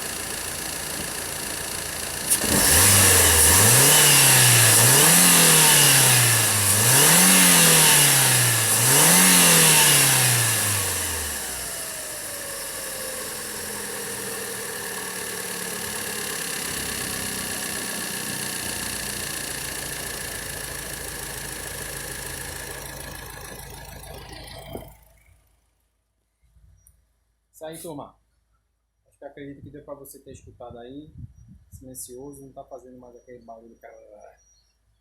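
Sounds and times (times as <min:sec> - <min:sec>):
car engine revving and idling: 0:00.0 - 0:25.3.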